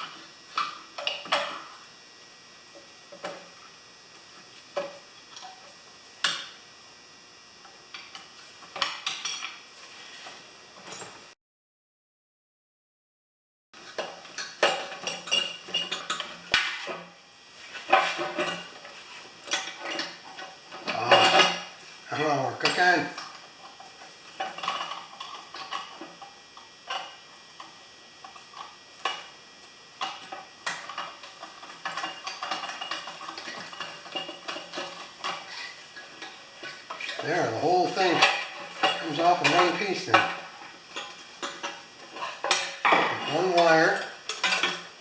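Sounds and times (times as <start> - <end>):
metal tools clinking and clanking: 13.9 - 16.3, 19.5 - 21.6, 30.9 - 44.9.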